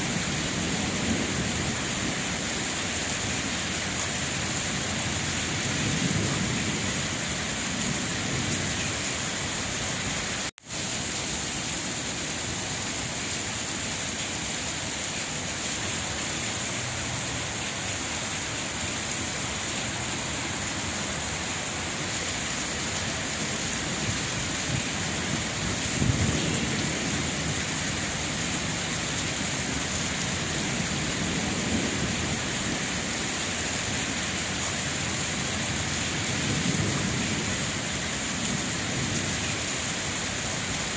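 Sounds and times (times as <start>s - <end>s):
steady rain falling: 0.0s - 40.9s
low thunder rumbles: 5.2s - 8.9s, 23.4s - 28.6s, 30.5s - 32.9s, 35.7s - 39.4s.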